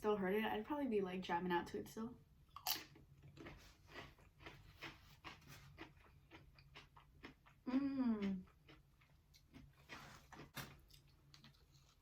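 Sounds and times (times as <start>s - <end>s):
person chewing: 2.5s - 12.0s.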